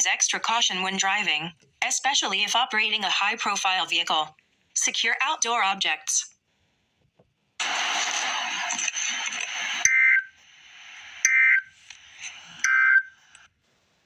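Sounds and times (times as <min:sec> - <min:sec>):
static-like hiss: 0:07.6 - 0:14.0.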